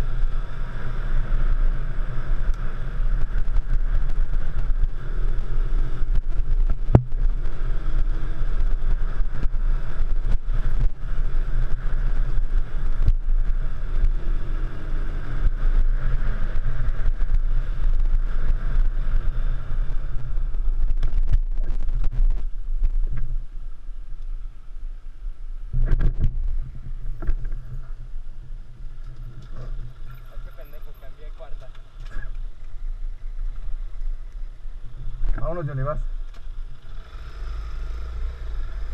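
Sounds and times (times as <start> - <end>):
knocks and rattles from rough ground: 25.7 - 28.0.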